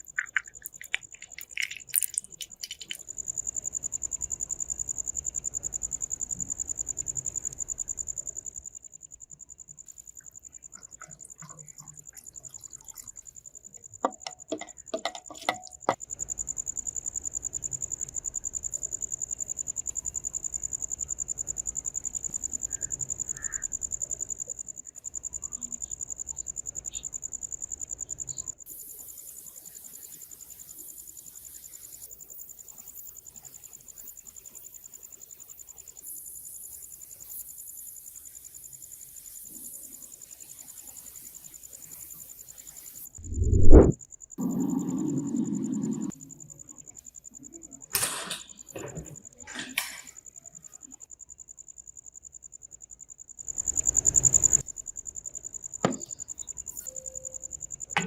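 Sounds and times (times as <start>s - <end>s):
cricket trilling: 0.0s - 58.0s
sharp clicks and knocks: 14.0s - 16.0s.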